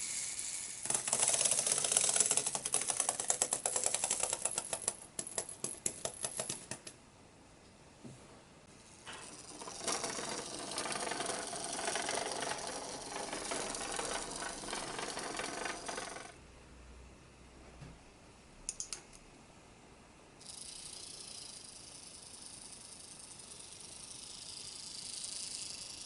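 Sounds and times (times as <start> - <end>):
clockwork toy gears whirring: 0.0 - 6.8, 8.8 - 16.4, 20.4 - 26.0.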